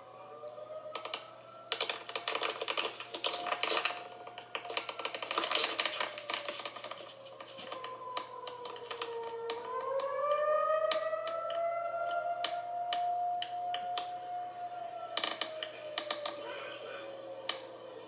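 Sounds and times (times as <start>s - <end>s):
faint warning siren: 0.0s - 18.0s
rapid sharp clicks and crackles: 0.9s - 14.1s.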